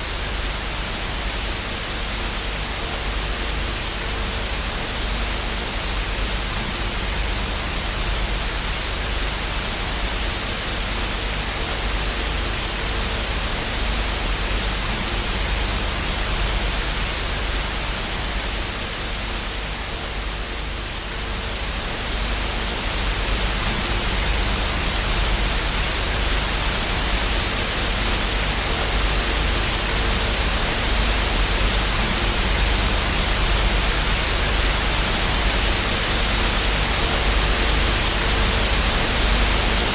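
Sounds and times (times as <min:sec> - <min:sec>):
television static hiss: 0:00.0 - 0:39.9.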